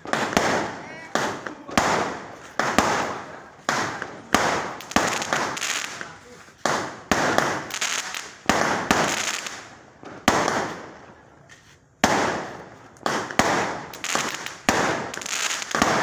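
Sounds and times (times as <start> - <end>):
fireworks bangs: 0.0 - 16.0.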